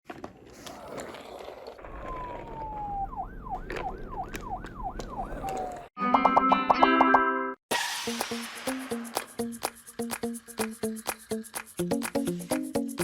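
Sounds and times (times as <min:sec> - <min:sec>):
toy siren wailing: 0:02.0 - 0:05.9
music: 0:06.0 - 0:13.0.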